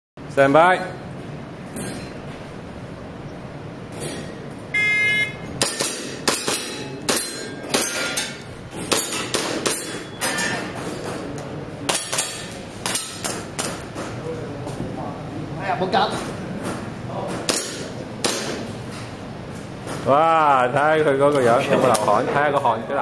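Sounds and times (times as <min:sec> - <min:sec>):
shot timer beep: 0:04.7 - 0:05.5.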